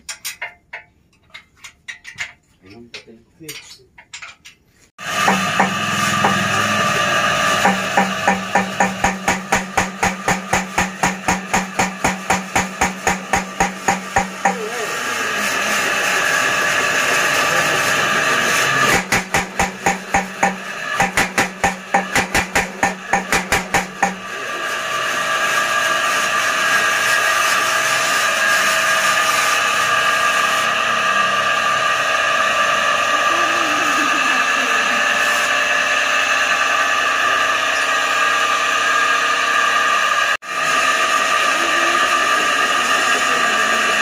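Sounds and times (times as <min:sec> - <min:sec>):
power hammer pounding: 0:05.0 - 0:25.3
machine motor running: 0:05.0 - 0:44.0.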